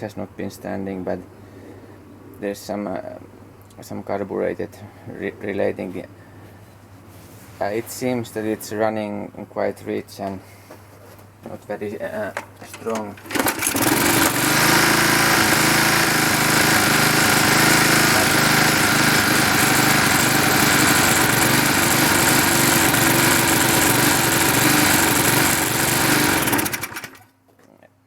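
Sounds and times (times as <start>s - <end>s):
lawnmower engine running: 12.7s - 27.3s.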